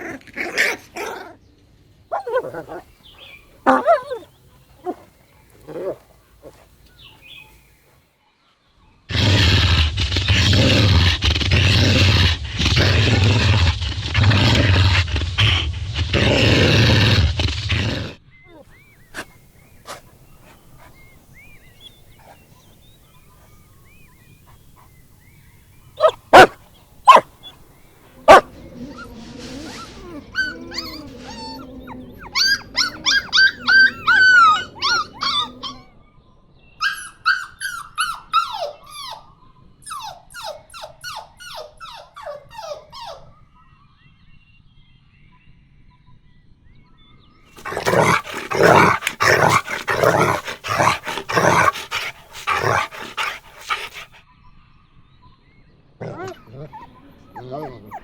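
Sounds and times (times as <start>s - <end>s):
puppies whining and yelping: 2.1s - 2.8s, 3.7s - 5.0s, 26.0s - 27.5s, 28.3s - 35.8s, 39.9s - 43.2s, 47.6s - 54.2s, 56.1s - 58.0s
puppies barking: 2.1s - 5.0s, 19.2s - 22.5s, 26.0s - 27.6s, 28.2s - 35.8s, 47.6s - 54.2s.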